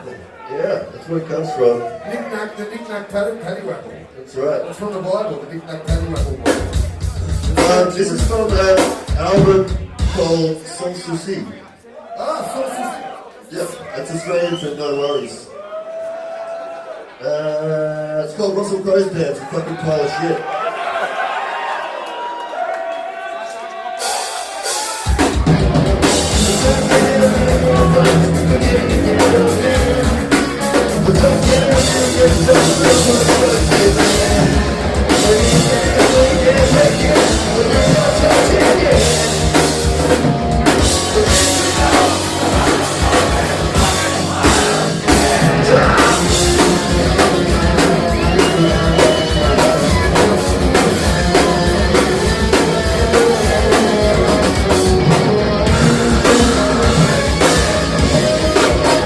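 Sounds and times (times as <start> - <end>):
punk rock band playing live: 5.8 - 10.4, 24.0 - 59.0
pounding drum kit: 5.9 - 10.6, 24.0 - 59.0.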